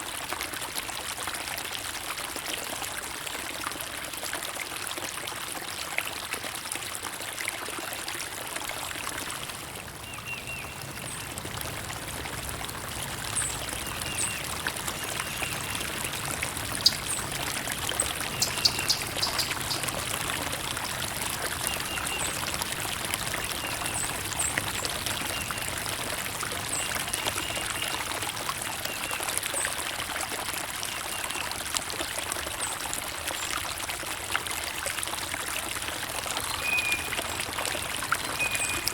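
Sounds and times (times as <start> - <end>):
running water trickling: 0.0 - 38.9
high bird chirps: 18.3 - 19.8.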